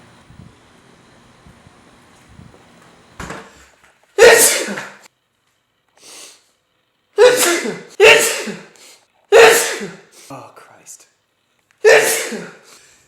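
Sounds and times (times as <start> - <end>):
man sneezing: 4.2 - 5.0, 7.2 - 10.1, 11.8 - 12.7
sharp intake of breath: 6.0 - 6.5, 8.3 - 9.1.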